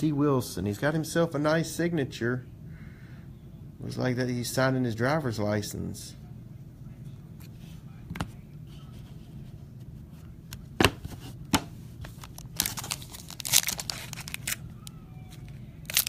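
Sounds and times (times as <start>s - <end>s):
wrapper crinkling and tearing: 12.1s - 16.0s.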